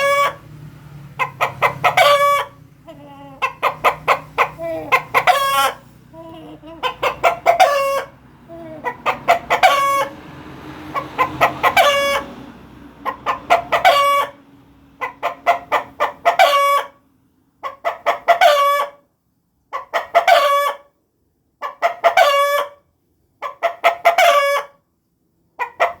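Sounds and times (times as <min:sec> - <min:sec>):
chicken lure calls: 0:00.0 - 0:00.5, 0:01.2 - 0:10.2, 0:13.0 - 0:14.4.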